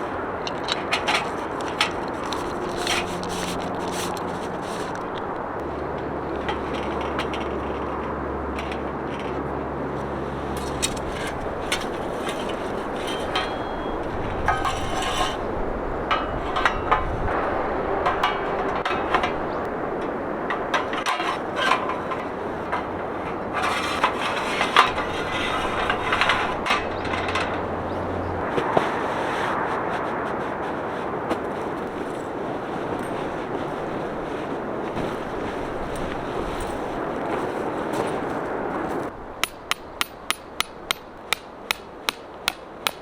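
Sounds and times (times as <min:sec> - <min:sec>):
camping gear knocks and scrapes: 0:00.7 - 0:05.2, 0:10.6 - 0:17.4, 0:18.0 - 0:39.8.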